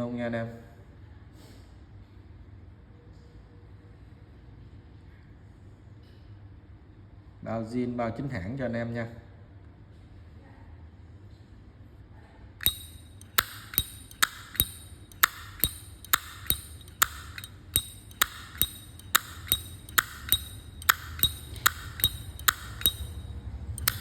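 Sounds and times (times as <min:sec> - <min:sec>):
lighter lid clicking open and shut: 0:12.6 - 0:23.2.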